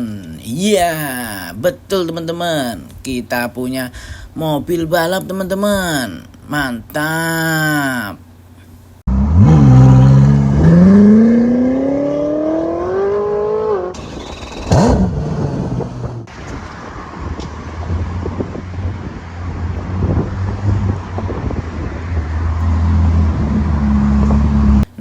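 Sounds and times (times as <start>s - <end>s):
race car engine revving: 9.1s - 16.3s, 17.8s - 24.9s.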